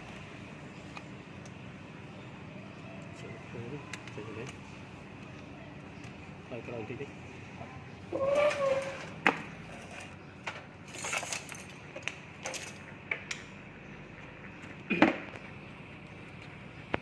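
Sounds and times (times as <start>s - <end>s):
small hard objects clinking: 10.8s - 12.8s.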